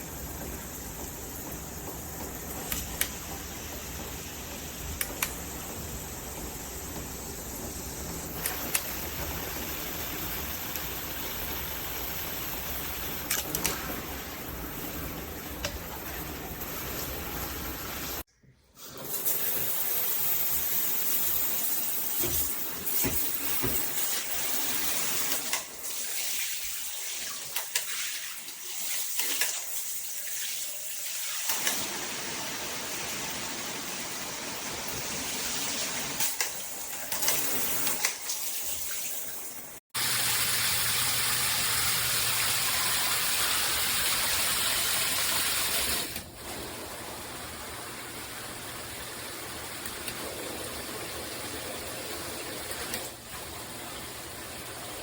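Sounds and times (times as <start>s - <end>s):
shower head spraying water: 0.0s - 18.3s, 40.0s - 46.8s.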